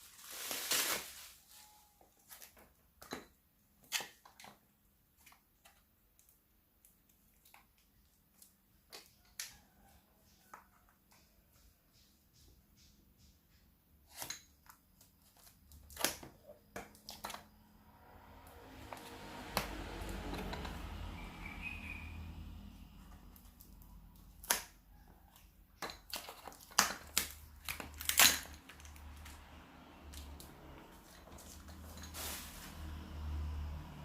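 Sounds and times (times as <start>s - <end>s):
rustling: 0.0s - 2.6s, 30.6s - 33.3s.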